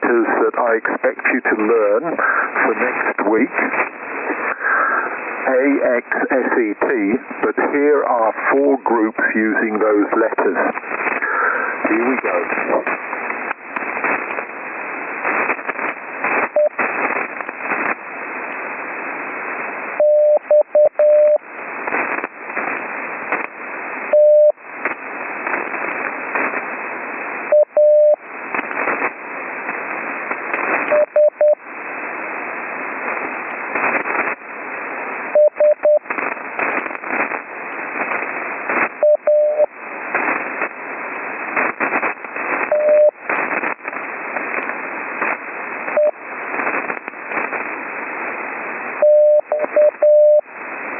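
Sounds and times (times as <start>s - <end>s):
radio band noise hiss and crackle: 0.0s - 50.9s
morse code sidetone: 20.0s - 21.4s, 24.1s - 24.6s, 27.5s - 28.2s, 30.9s - 31.6s, 35.4s - 36.0s, 39.0s - 39.7s, 42.7s - 43.2s, 46.0s - 46.2s, 49.0s - 50.4s.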